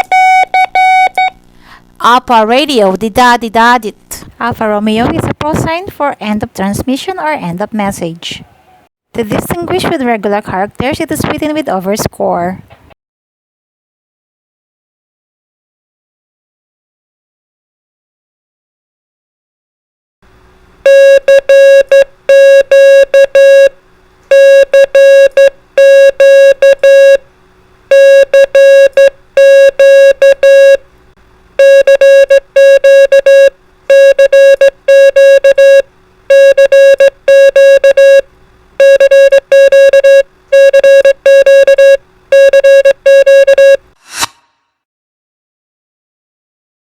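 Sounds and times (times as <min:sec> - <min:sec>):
morse code beeping: 0:00.0 - 0:01.4, 0:20.9 - 0:23.7, 0:24.3 - 0:27.2, 0:27.9 - 0:30.8, 0:31.6 - 0:38.2, 0:38.8 - 0:43.8.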